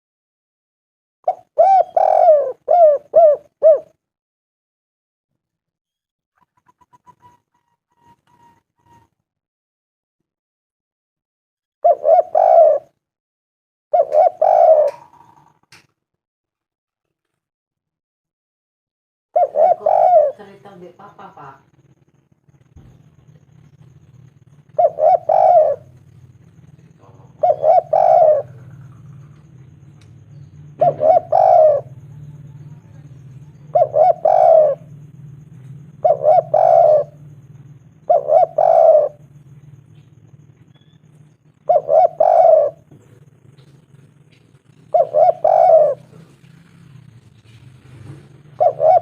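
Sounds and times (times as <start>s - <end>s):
dove cooing: 1.3s - 4.0s, 6.4s - 9.1s, 11.8s - 13.0s, 13.9s - 15.7s, 19.4s - 49.0s
steady low hum: 19.4s - 49.0s.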